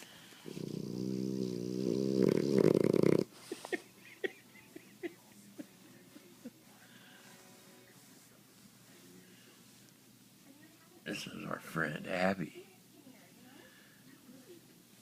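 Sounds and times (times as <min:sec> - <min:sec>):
person snoring: 0:00.5 - 0:03.3.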